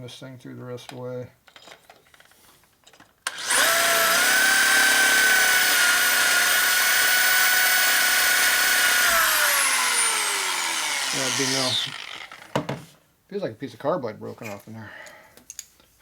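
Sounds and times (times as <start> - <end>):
power drill whining: 3.3 - 12.7.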